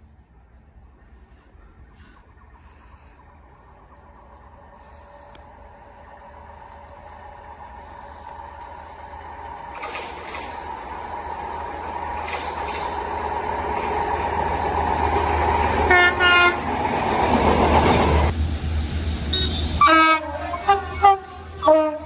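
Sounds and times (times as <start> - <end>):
train rumble: 0.0 - 22.0
train horn blasts: 15.8 - 16.7, 19.3 - 22.0.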